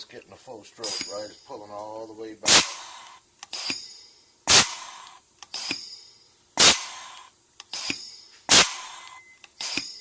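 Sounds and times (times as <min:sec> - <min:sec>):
exhaust air hiss: 0:02.3 - 0:10.0.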